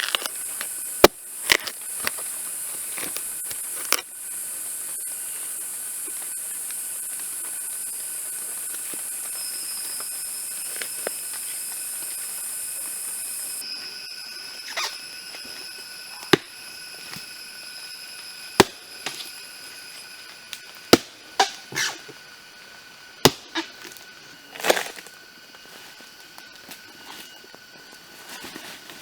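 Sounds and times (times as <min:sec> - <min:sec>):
axe chopping wood: 0:18.6 - 0:19.3, 0:20.9 - 0:22.0, 0:23.2 - 0:24.0.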